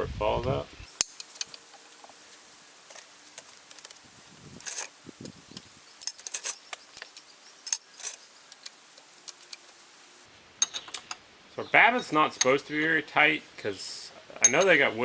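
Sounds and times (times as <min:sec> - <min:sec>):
metal tools clinking: 0:04.6 - 0:09.8, 0:10.6 - 0:11.2, 0:12.0 - 0:12.6, 0:14.2 - 0:14.9.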